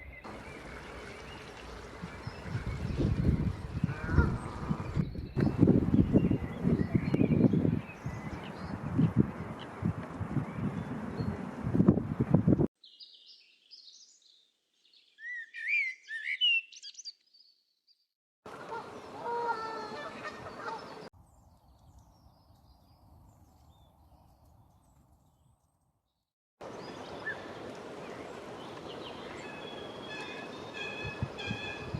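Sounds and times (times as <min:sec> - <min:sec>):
outdoor background noise: 0:00.0 - 0:12.6, 0:26.6 - 0:31.9
songbird twittering: 0:12.8 - 0:17.6, 0:26.7 - 0:31.9.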